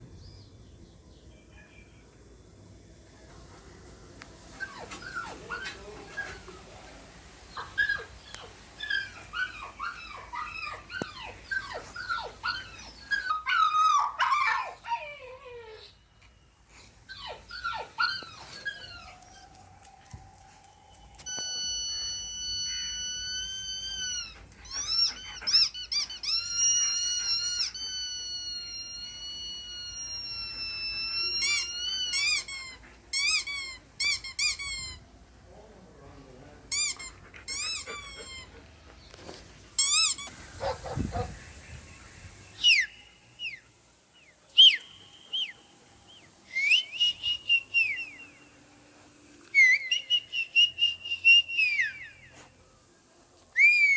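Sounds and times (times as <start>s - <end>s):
long wavering squeals: 17.5s - 35.0s.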